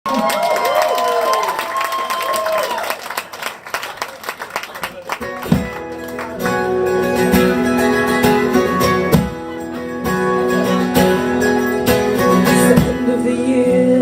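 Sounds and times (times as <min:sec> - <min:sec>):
acoustic guitar strumming chords: 0:05.2 - 0:14.0.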